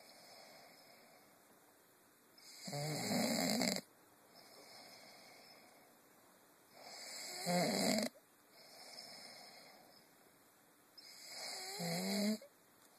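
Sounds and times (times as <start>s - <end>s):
quiet breathing: 0.0s - 1.7s, 2.4s - 12.9s
man snoring heavily: 2.4s - 3.8s, 6.8s - 9.8s, 11.0s - 12.4s.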